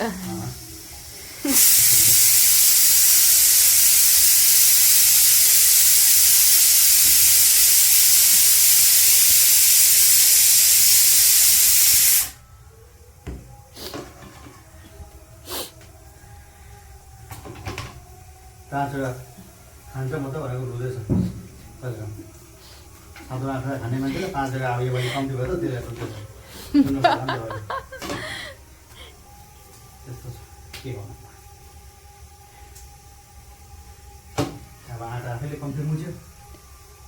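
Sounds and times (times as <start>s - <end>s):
steam hissing: 0.0s - 12.4s, 13.6s - 14.6s, 15.4s - 16.0s, 16.7s - 37.0s.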